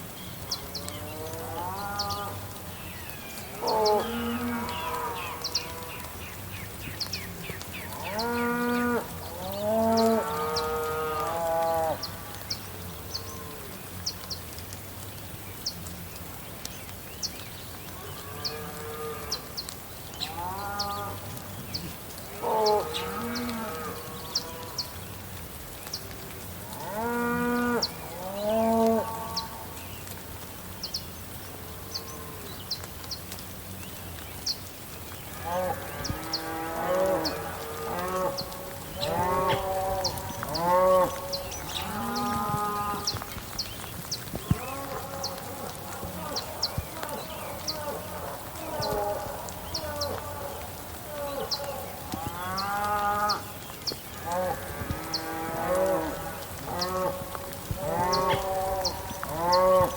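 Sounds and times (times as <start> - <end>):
rain hiss: 0.0 - 59.9
cows mooing: 3.5 - 6.1, 8.0 - 12.0, 26.8 - 29.5, 35.4 - 43.2, 54.2 - 59.9.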